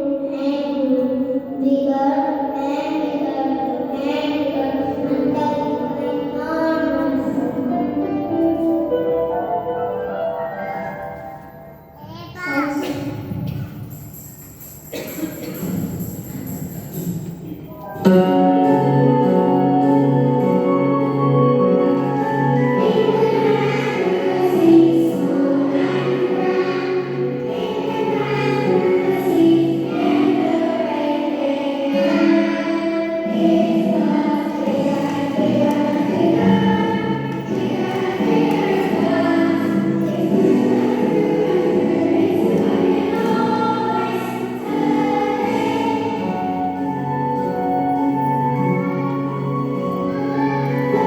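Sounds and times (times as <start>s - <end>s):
choir singing with instruments: 18.0s - 51.0s.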